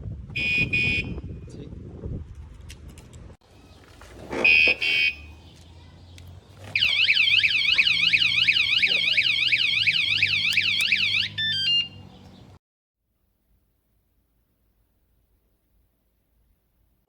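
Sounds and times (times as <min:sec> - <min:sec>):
warbling alarm siren: 0:06.8 - 0:12.0
alarm chirps: 0:06.8 - 0:12.1.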